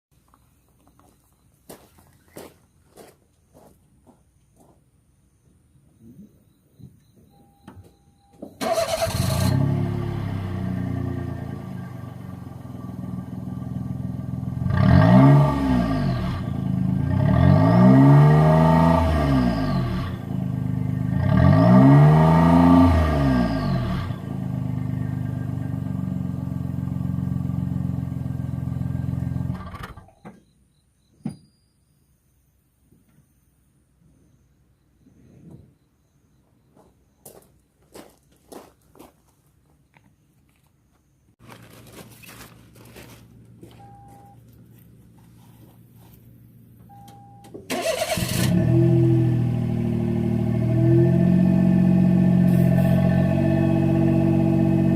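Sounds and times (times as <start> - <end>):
car engine starting and revving: 8.6 - 30.1, 47.7 - 54.9.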